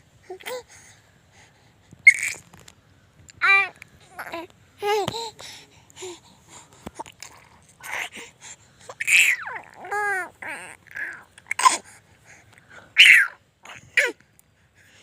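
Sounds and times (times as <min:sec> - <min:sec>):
baby babbling and squealing: 0:02.1 - 0:02.4, 0:03.4 - 0:05.3, 0:08.9 - 0:11.8, 0:13.0 - 0:14.2.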